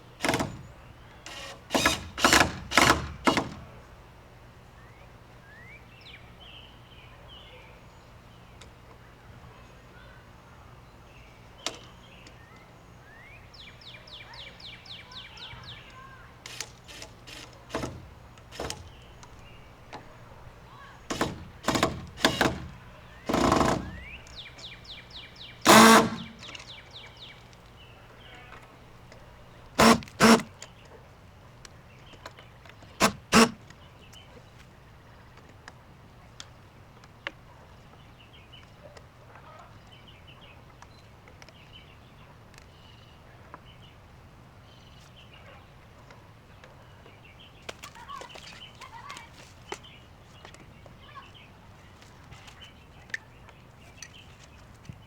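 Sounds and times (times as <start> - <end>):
songbirds chirping faintly: 0.0 - 55.0
loud short noisy bursts: 25.6 - 26.4, 29.8 - 30.5, 33.0 - 33.6.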